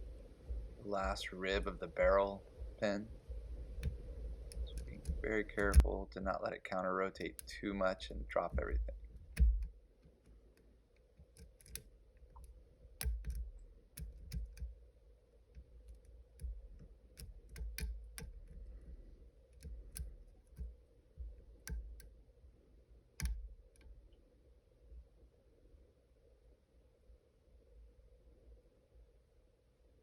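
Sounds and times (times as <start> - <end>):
lock pick clicks and taps: 3.6 - 5.9, 8.6 - 14.8, 15.5 - 22.2, 23.2 - 24.0.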